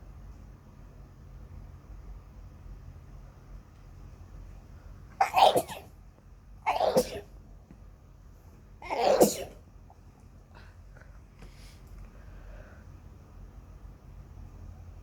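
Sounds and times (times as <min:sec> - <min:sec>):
person sneezing: 0:05.2 - 0:05.9, 0:06.7 - 0:07.3, 0:08.8 - 0:09.6.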